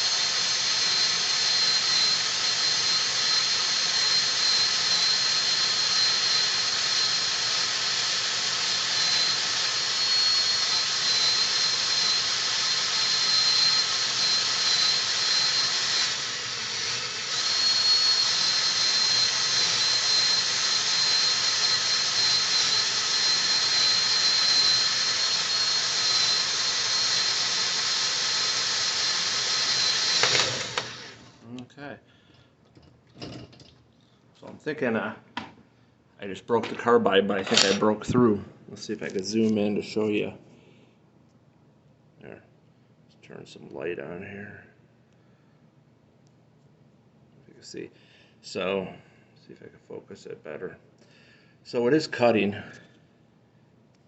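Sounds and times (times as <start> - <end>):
electric drill grinding into steel: 0.0 - 31.4, 37.3 - 38.0.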